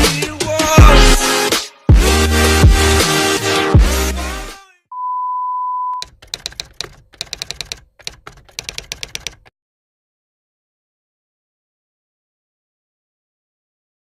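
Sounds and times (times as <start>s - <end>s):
typewriter clacking: 6.0s - 9.5s.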